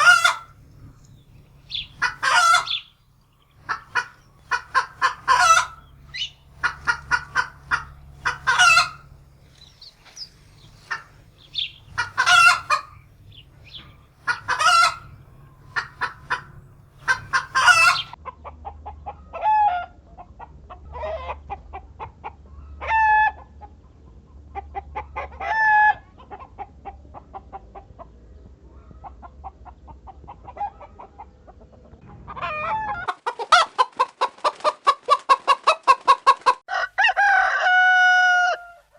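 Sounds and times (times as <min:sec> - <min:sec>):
chicken squawks: 0:00.0 - 0:03.0, 0:03.6 - 0:18.2
short pitched chicken calls: 0:00.0 - 0:03.0, 0:03.6 - 0:18.2
chickens clucking: 0:00.0 - 0:18.2, 0:29.0 - 0:38.8.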